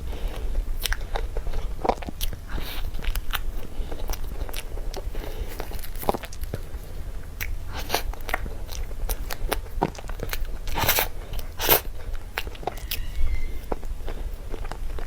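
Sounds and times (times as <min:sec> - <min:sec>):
close-up eating and chewing: 0:00.0 - 0:15.0
sticky mouth clicks and smacks: 0:00.8 - 0:06.7, 0:07.3 - 0:13.0.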